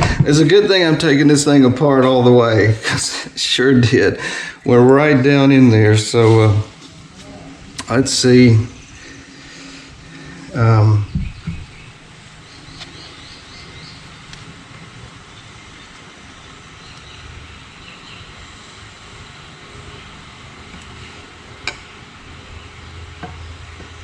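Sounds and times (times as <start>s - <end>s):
low background drone: 0.0s - 24.0s.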